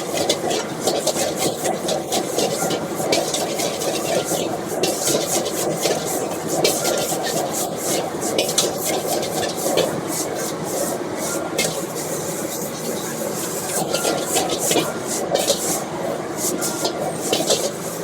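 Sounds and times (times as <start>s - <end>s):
metal spatula scraping a wok: 0.1s - 18.0s.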